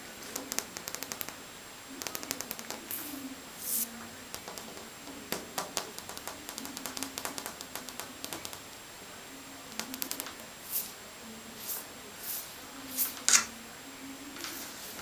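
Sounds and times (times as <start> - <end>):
soft hiss: 5.8 - 15.0.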